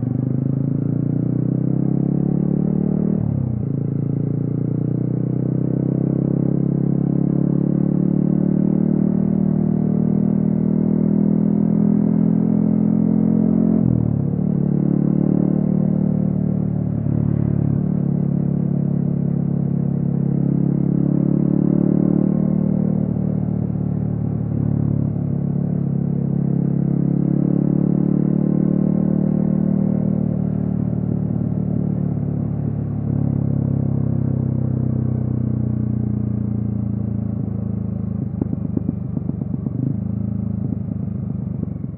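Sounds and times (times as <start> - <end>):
motorcycle engine cruising: 0.0 - 41.9.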